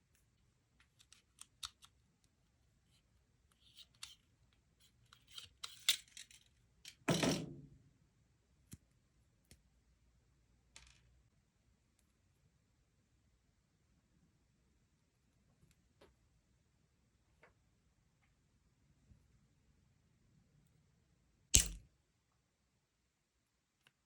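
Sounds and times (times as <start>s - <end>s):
small parts clicking and snipping: 0.8s - 7.1s, 21.5s - 21.8s.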